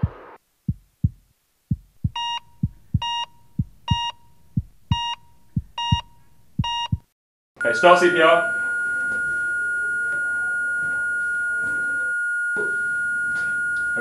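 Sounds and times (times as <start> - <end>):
heartbeat thumping: 0.0 - 7.1
heart monitor beeping: 0.0 - 14.0.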